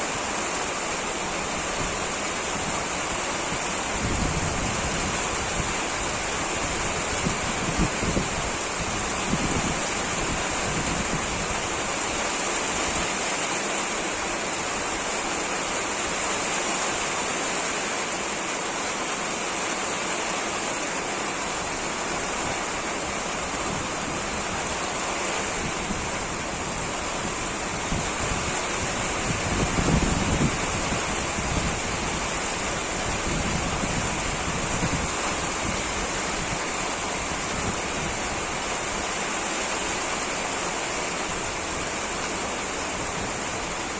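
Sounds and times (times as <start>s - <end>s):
heavy rain falling: 0.0s - 43.9s
wind gust on microphone: 1.7s - 13.4s, 22.3s - 40.2s.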